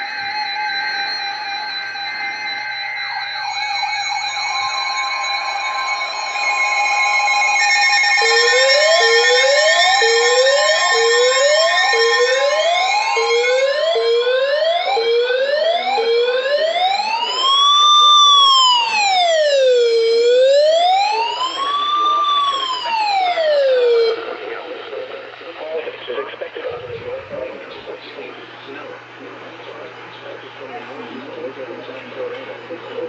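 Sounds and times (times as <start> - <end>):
electronic siren whooping and wailing: 0.0 - 24.3
emergency alert attention tones: 0.0 - 25.8.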